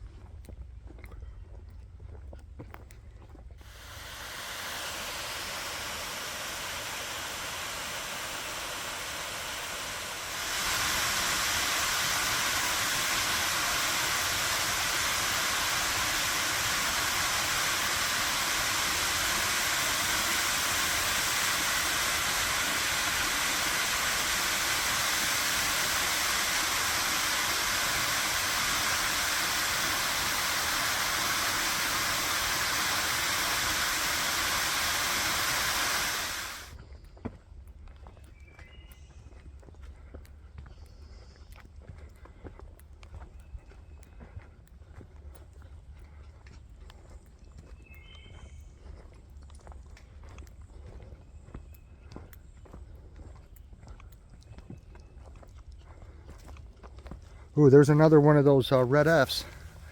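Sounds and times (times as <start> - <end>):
waterfall rushing: 3.6 - 36.7.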